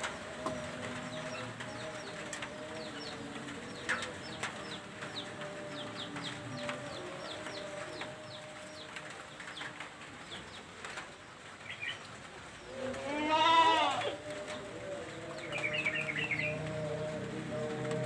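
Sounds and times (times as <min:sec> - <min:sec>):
small birds chirping: 0:00.3 - 0:13.0, 0:14.1 - 0:18.0
goat bleating: 0:12.8 - 0:14.2.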